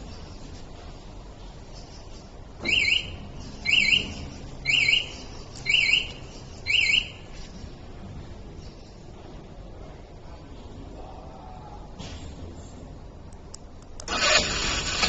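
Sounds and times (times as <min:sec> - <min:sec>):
motorcycle alarm chirps: 0:02.6 - 0:07.3.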